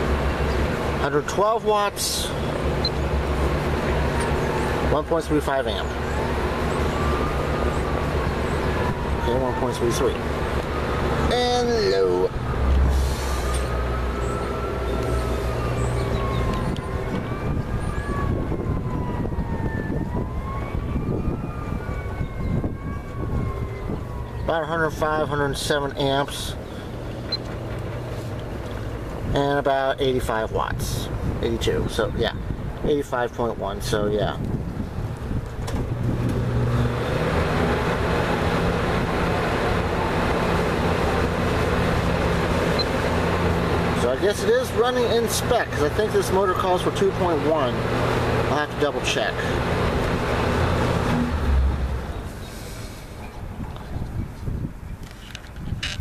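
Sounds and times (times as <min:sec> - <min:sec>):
box fan humming: 0:00.0 - 0:19.4, 0:34.5 - 0:52.6
emergency vehicle siren wailing: 0:00.0 - 0:27.0, 0:33.6 - 0:52.5.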